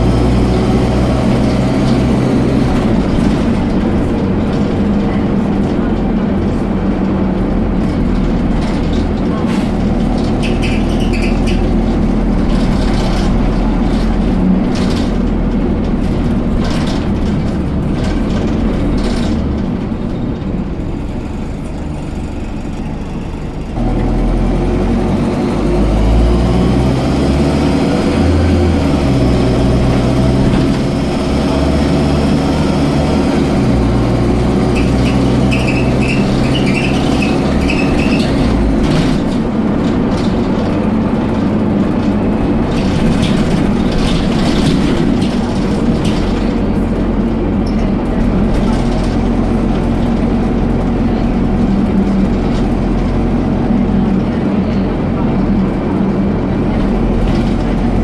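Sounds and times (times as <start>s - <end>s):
bus diesel engine: 0.0s - 58.0s.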